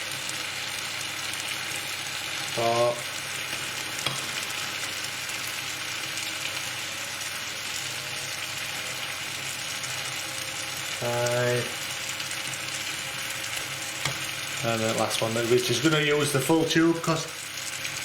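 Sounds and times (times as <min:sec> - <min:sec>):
food sizzling in a pan: 0:00.0 - 0:18.0.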